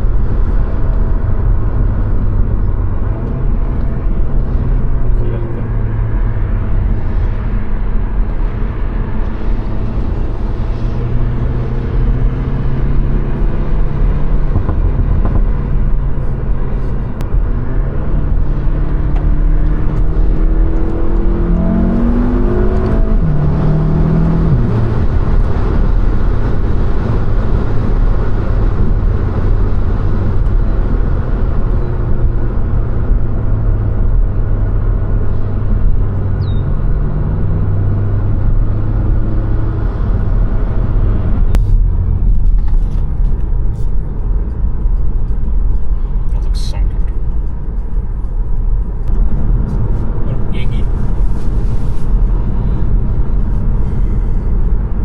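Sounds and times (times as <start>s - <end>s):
car engine running: 0.0s - 55.0s.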